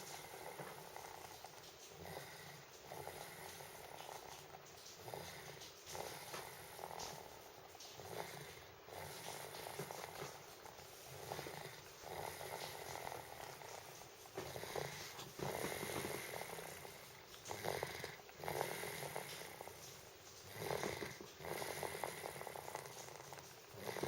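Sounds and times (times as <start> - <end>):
pet snoring loudly: 0.0 - 24.0.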